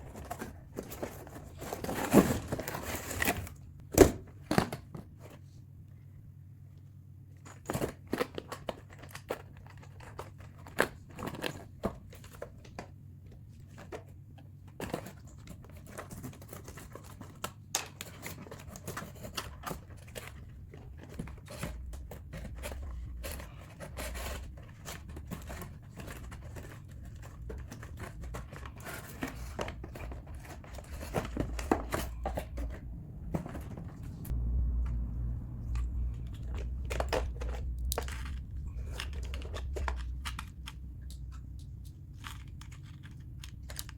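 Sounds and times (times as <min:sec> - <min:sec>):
low rumble of handling noise: 0:00.0 - 0:43.9
packaging crinkling and tearing: 0:35.7 - 0:43.9.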